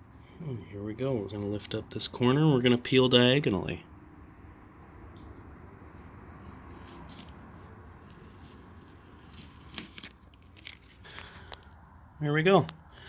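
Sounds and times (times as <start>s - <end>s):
tape peeling off vinyl: 5.6s - 11.1s
sharp crackles of tape: 5.6s - 11.6s.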